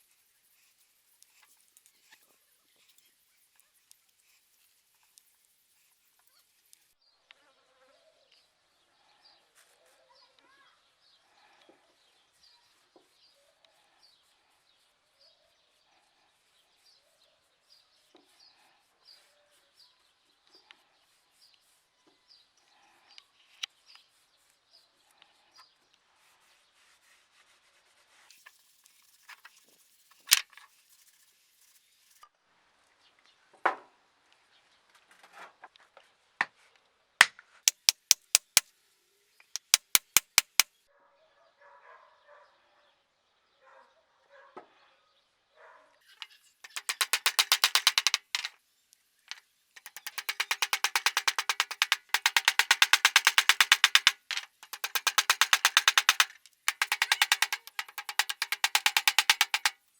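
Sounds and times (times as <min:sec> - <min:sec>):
sharp knocks: 0:37.7 - 0:38.6, 0:39.6 - 0:40.6, 0:46.7 - 0:48.5, 0:49.8 - 0:59.8
hammer blows: 0:39.6 - 0:40.6, 0:46.7 - 0:48.5, 0:49.8 - 0:59.8.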